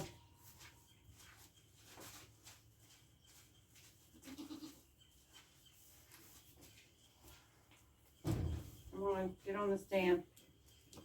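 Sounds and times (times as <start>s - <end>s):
goat bleating: 4.2s - 4.8s.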